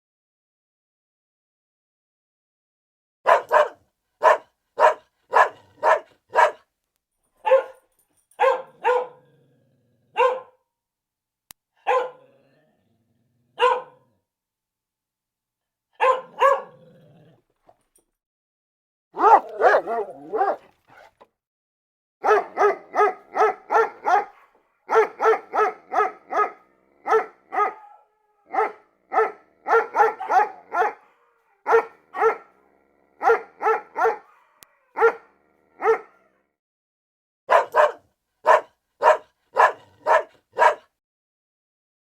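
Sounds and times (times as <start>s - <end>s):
dog barking: 3.2s - 6.7s, 7.4s - 9.3s, 10.1s - 10.6s, 11.8s - 12.3s, 13.6s - 14.2s, 15.9s - 16.9s, 19.2s - 21.2s, 22.2s - 36.4s, 37.5s - 40.9s.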